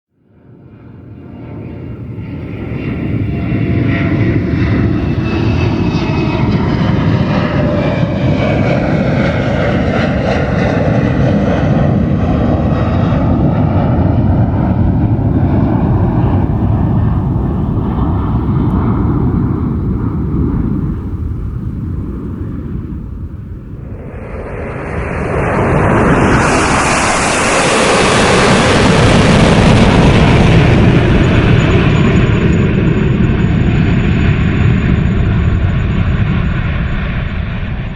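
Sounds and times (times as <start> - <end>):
jet aircraft passing: 0.2 - 37.9.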